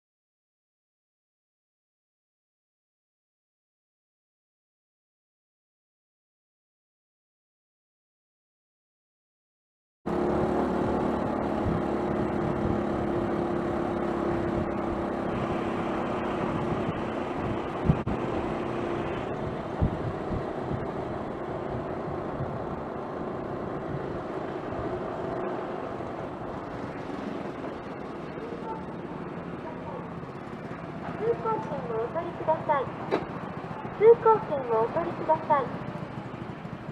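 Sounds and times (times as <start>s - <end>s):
road noise: 10.1s - 36.9s
scooter engine running: 10.1s - 36.9s
wind noise: 10.7s - 29.6s
sharp knocks: 33.0s - 33.4s.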